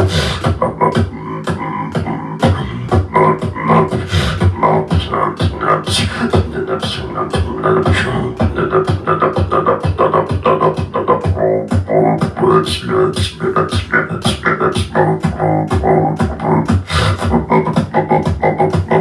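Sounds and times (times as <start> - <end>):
humming vocal bass line: 0.0 - 19.0
man beatboxing: 0.0 - 19.0.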